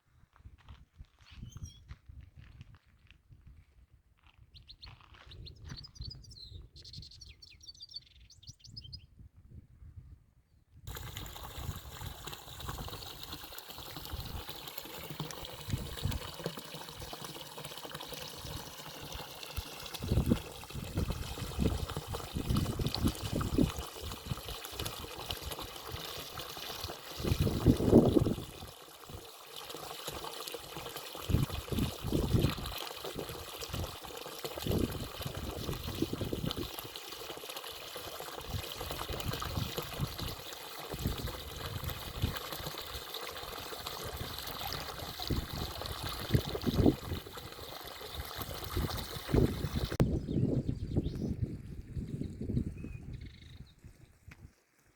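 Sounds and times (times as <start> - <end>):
water splashes: 10.9 - 50.0
stream trickling and gurgling: 10.9 - 54.9.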